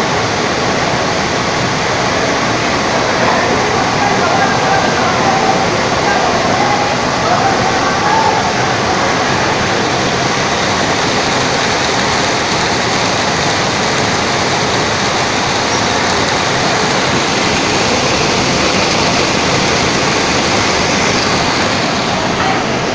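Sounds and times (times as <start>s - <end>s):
rush of water: 0.0s - 22.9s
sump pump running: 0.0s - 22.9s.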